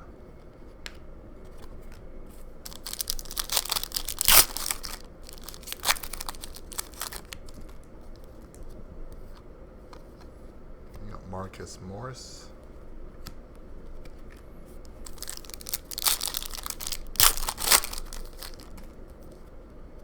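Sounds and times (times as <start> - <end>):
sharp crackle of plastic: 2.6 - 8.6, 14.2 - 19.4
plastic wrapper tearing and crinkling: 2.7 - 8.6, 14.9 - 19.0.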